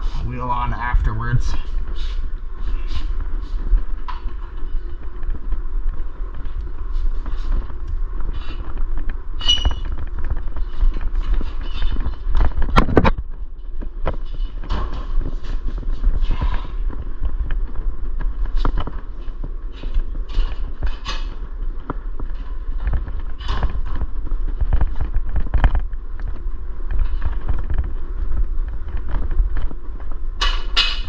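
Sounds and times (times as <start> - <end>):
low rumble: 0.0 - 31.0
metal parts clicking and creaking: 9.4 - 13.0.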